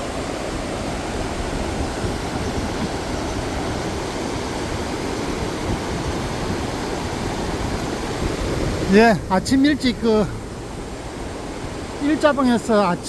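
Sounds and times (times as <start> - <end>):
river flood water rushing: 0.0 - 13.0.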